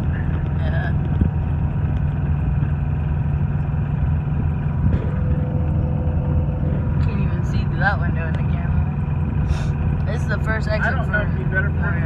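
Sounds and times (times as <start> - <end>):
car engine and tyre drone: 0.0 - 12.0
faint steady whine: 3.6 - 9.7.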